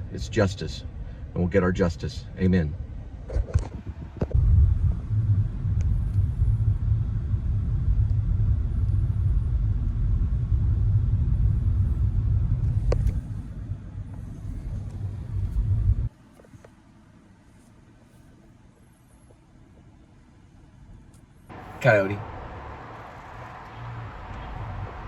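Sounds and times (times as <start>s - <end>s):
car driving rumble: 0.0s - 16.2s, 21.5s - 25.0s.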